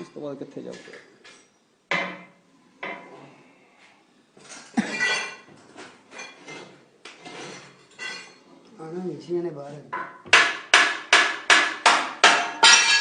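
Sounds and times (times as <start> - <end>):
tools clattering rattle: 4.5 - 8.4.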